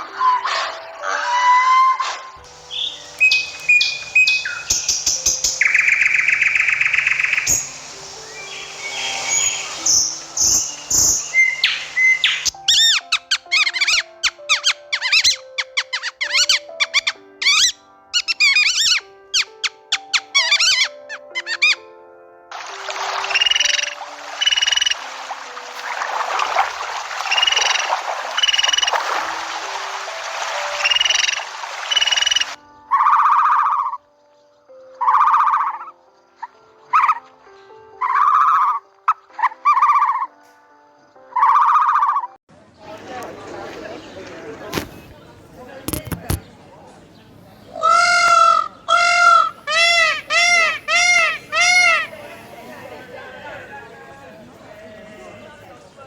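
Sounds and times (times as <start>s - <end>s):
bird trill: 0.0s - 22.0s, 22.6s - 25.1s, 25.8s - 40.4s, 41.1s - 42.4s, 47.1s - 54.0s
bird chirps and whistles: 1.3s - 21.8s, 23.2s - 25.0s, 27.2s - 29.1s, 30.8s - 34.0s, 49.0s - 52.1s
steady hiss: 2.5s - 12.5s
animal giving pulsed calls: 25.8s - 29.5s, 30.7s - 34.0s, 38.0s - 38.8s, 47.8s - 52.3s.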